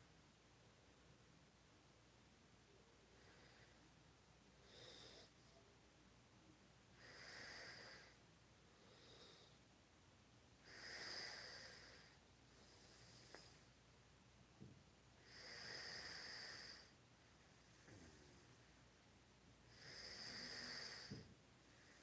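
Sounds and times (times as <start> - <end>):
woman snoring faintly: 19.7 - 21.2.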